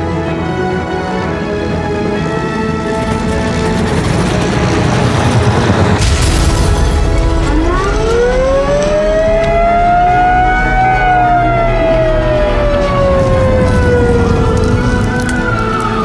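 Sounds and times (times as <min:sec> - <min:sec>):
music: 0:00.0 - 0:16.0
loud rumbling crash: 0:02.8 - 0:10.4
siren-like wail: 0:07.0 - 0:16.0.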